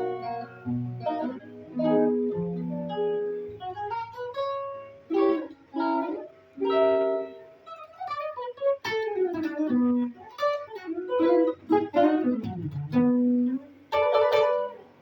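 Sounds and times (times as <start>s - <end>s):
guitar plucked chords and runs: 0.0s - 15.0s.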